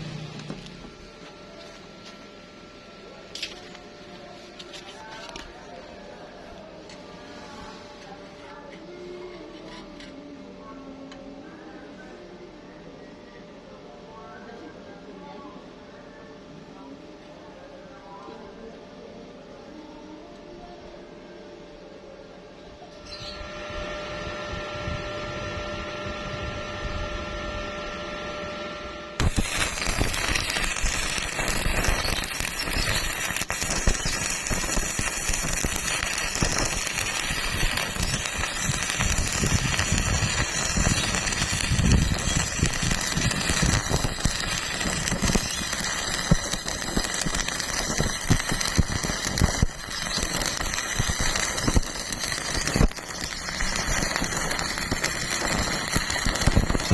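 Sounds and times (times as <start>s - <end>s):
welding arc crackling and sizzling: 0.0s - 8.1s, 23.0s - 56.9s
steady hum with held tones: 0.0s - 56.9s.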